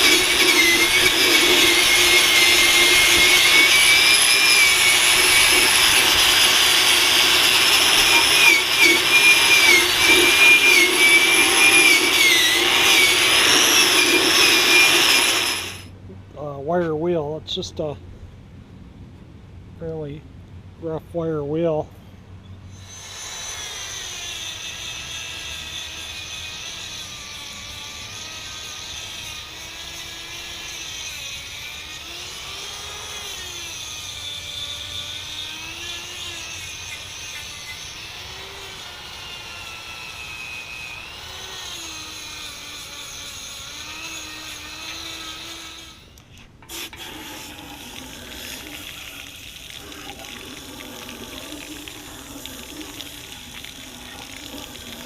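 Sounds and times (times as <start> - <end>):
drill wire wheel on metal: 0.0 - 15.9, 22.8 - 55.0.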